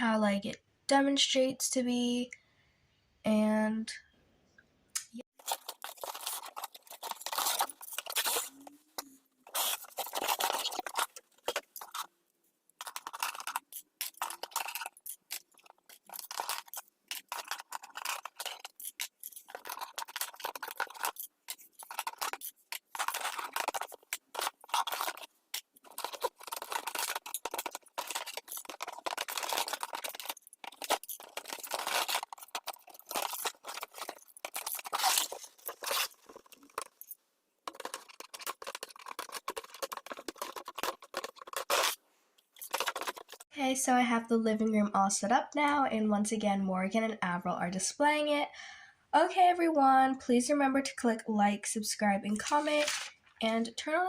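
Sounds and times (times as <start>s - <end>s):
cardboard and plastic tearing: 5.4s - 12.1s, 12.8s - 43.4s.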